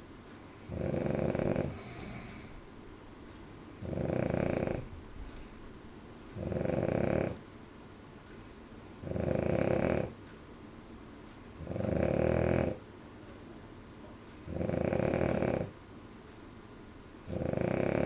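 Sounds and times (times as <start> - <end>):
dog snoring: 0.6 - 2.5, 3.6 - 5.4, 6.2 - 7.4, 8.9 - 10.2, 11.5 - 12.8, 14.4 - 15.8, 17.2 - 18.0.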